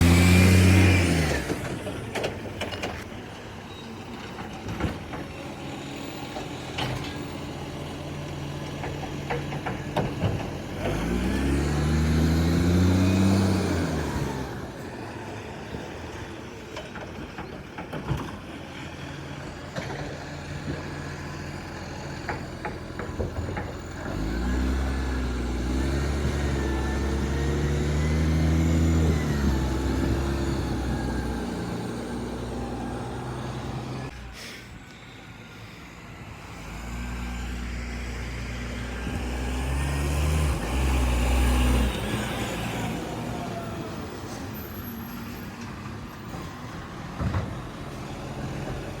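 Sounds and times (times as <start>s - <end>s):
diesel engine revving: 0.0s - 2.8s, 5.6s - 15.9s, 18.9s - 49.0s
knocks and clanks: 8.8s - 11.0s, 22.2s - 24.2s.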